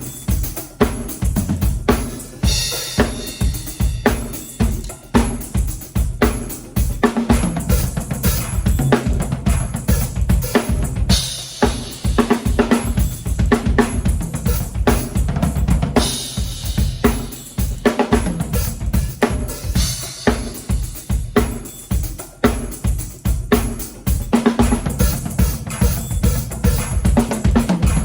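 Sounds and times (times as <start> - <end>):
cymbal wash: 0.0 - 8.9
bass drum and snare hits: 0.8 - 17.3, 18.1 - 28.0.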